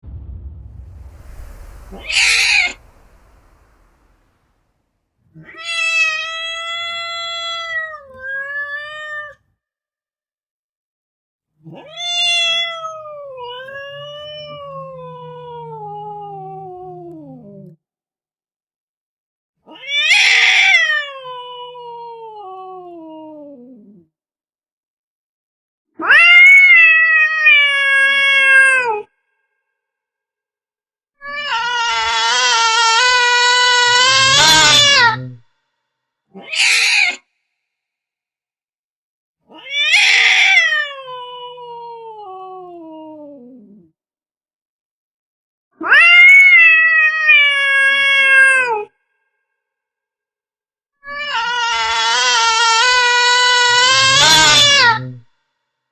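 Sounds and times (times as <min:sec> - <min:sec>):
cat harsh cry: 0:19.7 - 0:22.1, 0:26.0 - 0:29.0, 0:31.2 - 0:35.4, 0:36.4 - 0:37.2, 0:39.5 - 0:42.6, 0:45.8 - 0:48.9, 0:51.1 - 0:55.2
cat yowling: 0:31.2 - 0:35.4, 0:36.4 - 0:37.2, 0:39.5 - 0:43.5, 0:45.8 - 0:48.9, 0:51.1 - 0:55.2.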